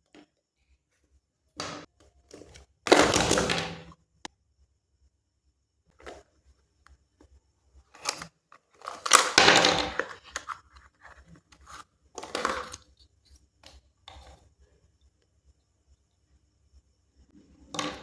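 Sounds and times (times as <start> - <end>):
packaging being torn: 8.9 - 10.2.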